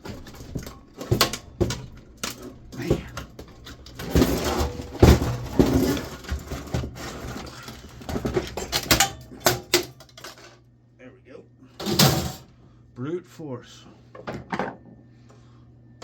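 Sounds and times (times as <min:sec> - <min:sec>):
computer case being forced apart: 0:00.0 - 0:10.3, 0:11.8 - 0:12.5.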